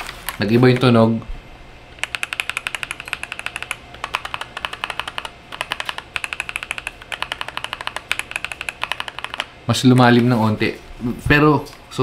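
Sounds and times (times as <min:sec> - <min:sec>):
mechanical keyboard typing: 0:02.0 - 0:09.5.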